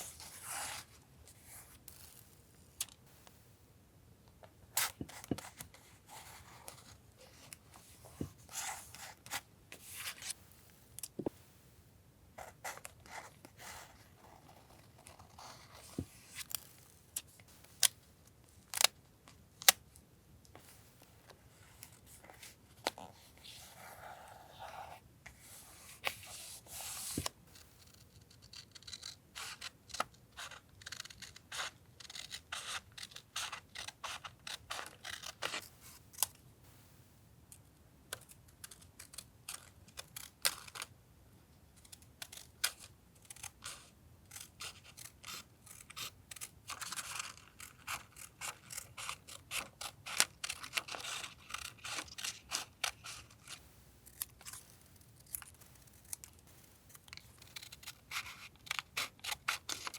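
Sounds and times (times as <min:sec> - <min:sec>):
scissors snipping paper: 0:28.3 - 0:35.6, 0:41.8 - 0:59.9.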